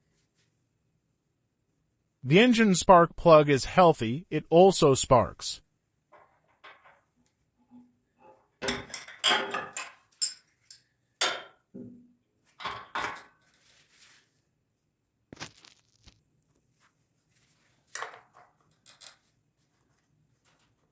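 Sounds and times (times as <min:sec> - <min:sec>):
metal tools clinking and knocking: 0:06.2 - 0:07.1, 0:07.7 - 0:11.6, 0:12.6 - 0:13.5, 0:18.0 - 0:19.3.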